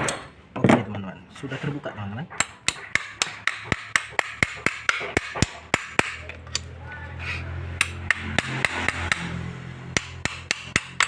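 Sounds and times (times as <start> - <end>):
hammer knocking on metal motor: 2.3 - 6.3, 7.8 - 11.0.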